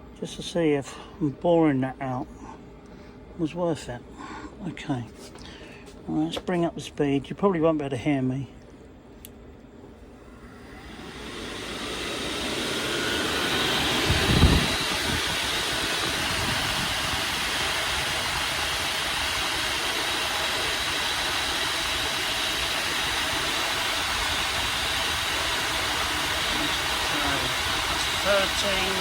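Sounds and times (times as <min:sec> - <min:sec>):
blower motors whining: 0:08.6 - 0:29.0
rush of air: 0:10.5 - 0:20.1.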